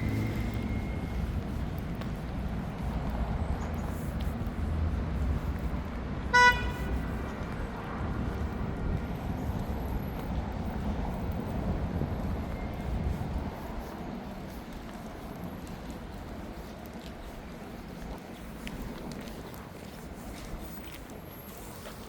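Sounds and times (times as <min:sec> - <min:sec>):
road traffic rumble: 0:00.0 - 0:22.0
car horn beep: 0:06.3 - 0:07.0.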